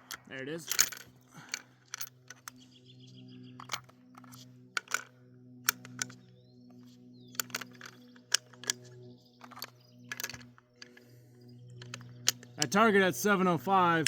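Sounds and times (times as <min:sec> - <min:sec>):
rifle and gear clicking: 0:00.0 - 0:02.6, 0:03.6 - 0:12.9
low hum: 0:00.0 - 0:14.0.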